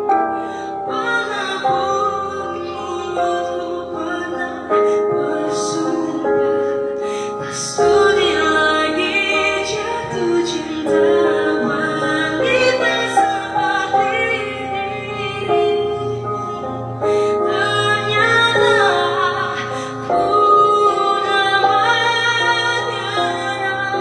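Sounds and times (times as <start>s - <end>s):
woman singing with vibrato: 0.0s - 24.0s.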